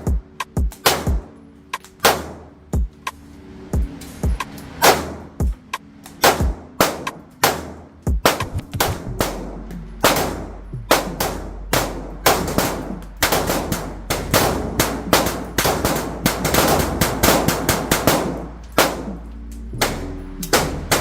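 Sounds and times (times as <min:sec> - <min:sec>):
pistol shots: 0:00.7 - 0:01.4, 0:02.0 - 0:02.5, 0:04.8 - 0:05.4, 0:06.2 - 0:21.0.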